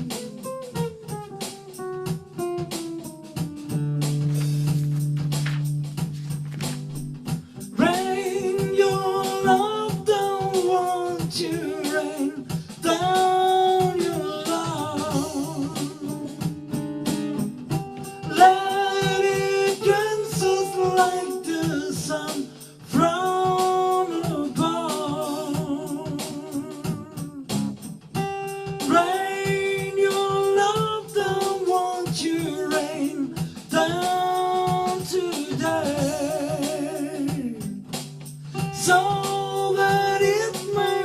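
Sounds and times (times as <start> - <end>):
person singing soul music: 0.0 - 4.4, 6.7 - 41.0
guitar accompaniment: 0.0 - 41.0.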